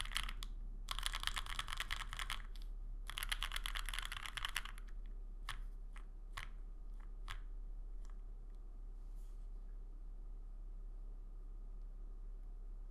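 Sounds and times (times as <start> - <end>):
mechanical keyboard typing: 0.0 - 8.2.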